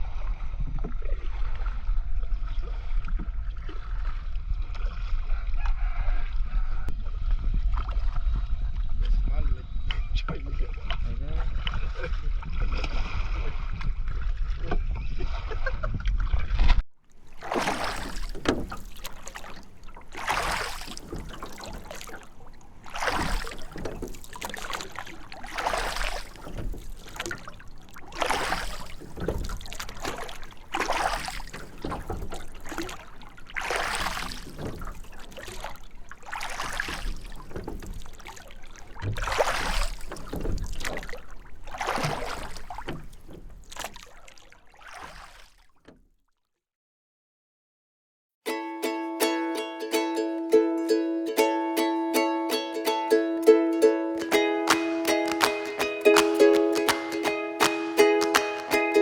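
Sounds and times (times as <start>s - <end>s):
seawater washing and splashing: 17.1s - 46.0s, 49.3s - 59.0s.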